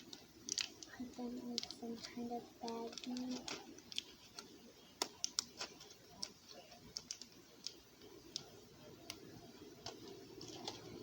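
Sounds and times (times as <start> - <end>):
pills and plastic pack clicking: 0.0 - 7.8.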